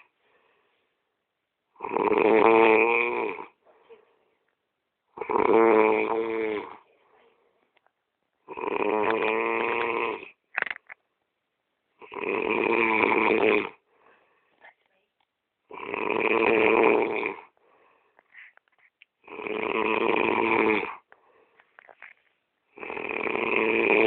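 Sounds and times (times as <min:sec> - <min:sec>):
faint breathing: 0:00.0 - 0:01.1, 0:03.6 - 0:04.5, 0:13.8 - 0:14.9, 0:17.5 - 0:18.9, 0:21.0 - 0:22.5
man snoring heavily: 0:01.8 - 0:03.6, 0:05.2 - 0:06.8, 0:08.5 - 0:10.4, 0:12.0 - 0:13.8, 0:15.7 - 0:17.5, 0:19.2 - 0:21.0, 0:22.7 - 0:24.0.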